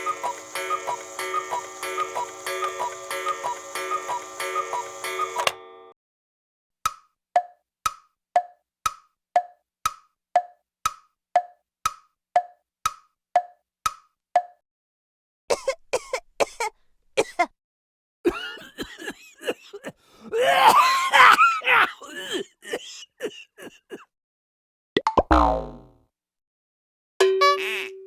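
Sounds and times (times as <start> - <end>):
clock ticking: 0.0 - 5.5, 7.4 - 13.5
cartoon coughs: 15.5 - 17.6, 18.3 - 24.1.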